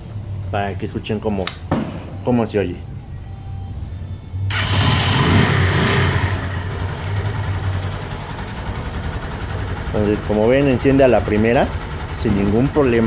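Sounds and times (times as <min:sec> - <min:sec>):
motorcycle engine starting and idling: 0:04.4 - 0:13.0.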